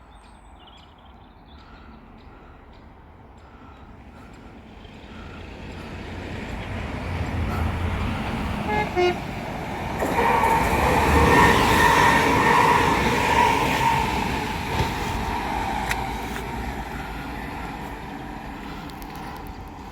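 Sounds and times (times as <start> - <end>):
diesel locomotive rumbling: 0.0 - 19.9
locomotive horn notes: 8.6 - 9.4.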